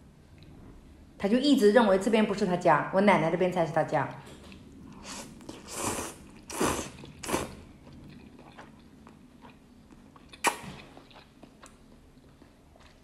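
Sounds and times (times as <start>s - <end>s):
chewing: 4.4s - 13.0s
person eating noodles: 4.9s - 9.6s, 10.2s - 11.7s.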